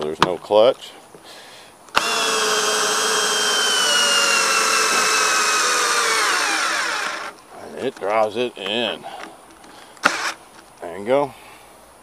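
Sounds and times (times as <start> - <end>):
screwdriver motor whine driving screw: 1.9 - 7.4, 10.0 - 10.4.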